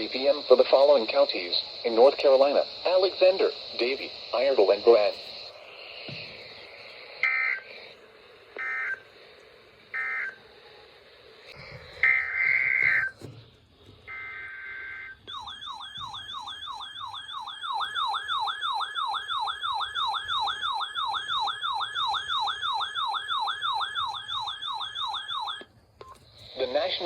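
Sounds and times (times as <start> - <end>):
screechy digital data bursts: 0.0 - 7.6.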